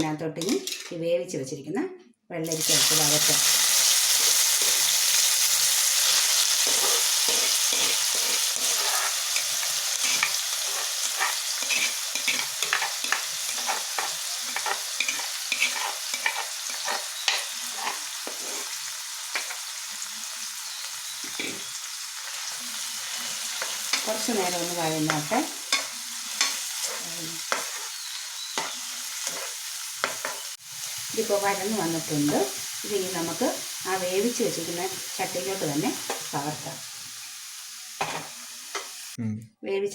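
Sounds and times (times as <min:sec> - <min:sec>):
food sizzling in oil: 0:02.4 - 0:39.2
spoon scraping a pan: 0:02.8 - 0:20.0, 0:20.6 - 0:31.0, 0:35.9 - 0:36.5, 0:38.0 - 0:39.0.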